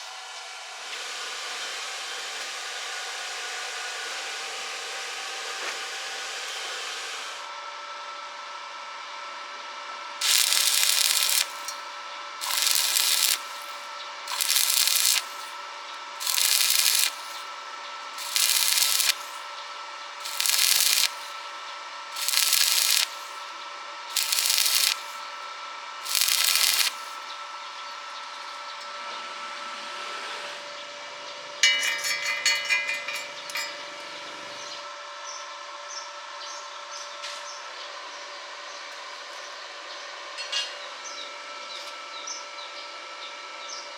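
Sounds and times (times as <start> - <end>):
rapid ticking: 10.2 - 11.8, 12.4 - 15.5, 16.2 - 17.5, 18.2 - 19.4, 20.2 - 21.3, 22.2 - 23.4, 24.1 - 25.2, 26.1 - 27.2
welding arc hissing and crackling: 10.2 - 11.8, 12.4 - 19.5, 20.2 - 21.5, 22.1 - 23.5, 24.1 - 25.4, 26.0 - 27.3.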